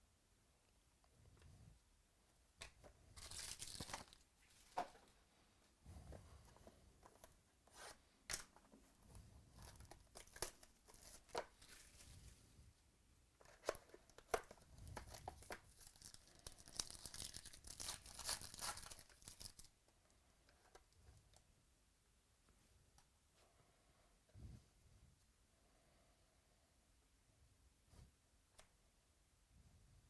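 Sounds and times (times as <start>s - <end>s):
packaging tearing and crinkling: 3.2s - 4.2s, 15.0s - 19.7s.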